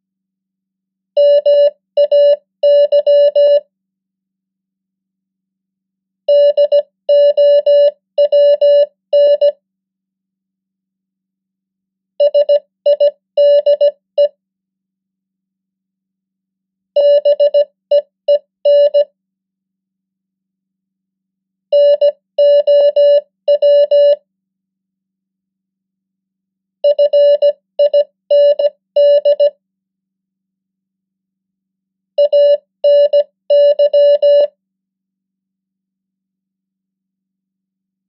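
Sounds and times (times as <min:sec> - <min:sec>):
morse code beeps: 0:01.2 - 0:03.6, 0:06.3 - 0:09.6, 0:12.2 - 0:14.0, 0:17.0 - 0:19.1, 0:21.8 - 0:24.2, 0:26.8 - 0:29.6, 0:32.2 - 0:34.5.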